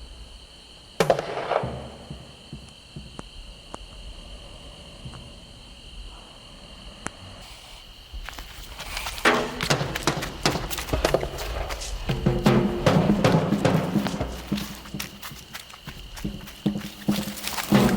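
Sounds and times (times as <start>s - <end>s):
tribal drumming: 9.1s - 17.9s
loud drum hit: 12.1s - 14.6s.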